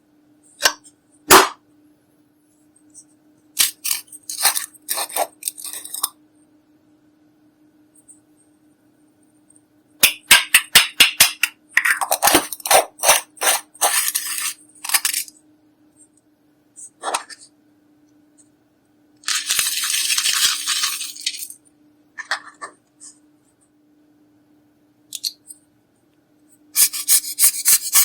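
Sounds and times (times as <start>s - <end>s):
tool scraping a palette: 3.8s - 6.1s, 11.8s - 15.3s, 26.8s - 28.0s.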